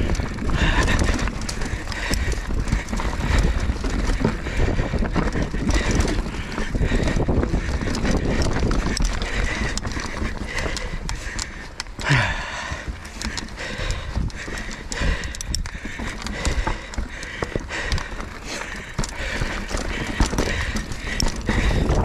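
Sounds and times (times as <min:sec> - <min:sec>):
bike tyres crunching and rattling: 0:00.0 - 0:22.0
wind rumbling on microphone: 0:00.0 - 0:22.0.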